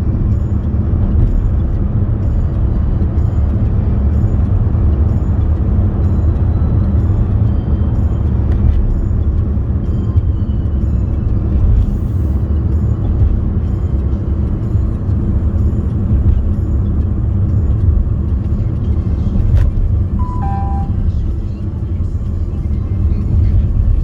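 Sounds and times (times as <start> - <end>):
car engine and road noise: 0.0 - 24.0
two-note electronic chime: 20.2 - 21.0.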